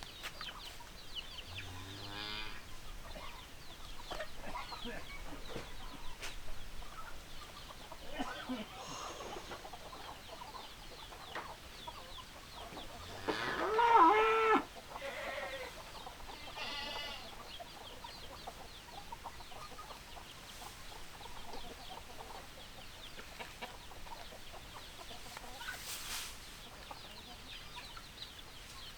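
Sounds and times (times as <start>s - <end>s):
chickens clucking: 0.0s - 28.9s
chicken drawn-out call: 12.9s - 17.6s.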